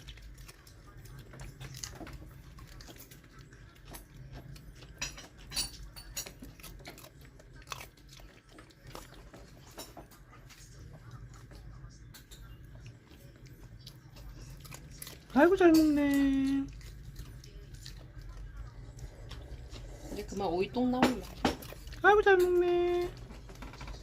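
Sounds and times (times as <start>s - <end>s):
dog crunching cucumber: 0.0s - 24.0s.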